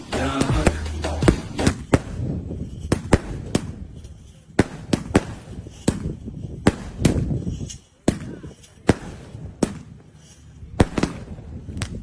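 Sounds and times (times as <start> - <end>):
music: 0.0 - 1.7
firecrackers cracking: 10.8 - 12.0.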